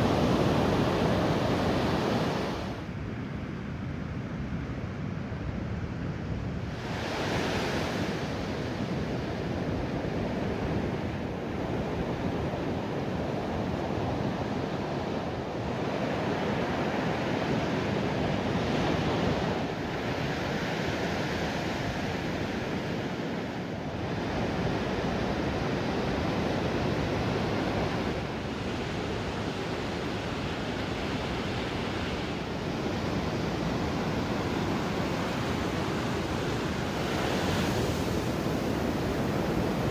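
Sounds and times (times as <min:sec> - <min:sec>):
ocean surf breaking on sand: 0:00.0 - 0:02.8, 0:24.7 - 0:39.9.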